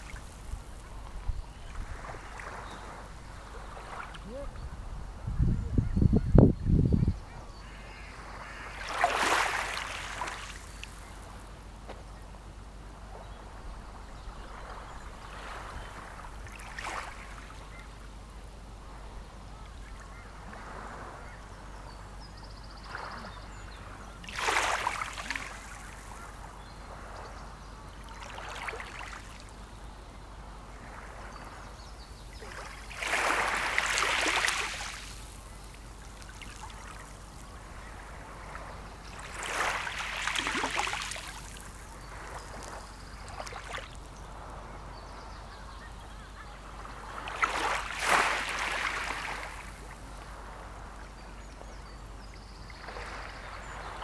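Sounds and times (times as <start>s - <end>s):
sea waves splashing: 0.0s - 4.5s, 8.1s - 11.6s, 24.1s - 27.2s, 32.3s - 45.3s, 46.6s - 51.0s.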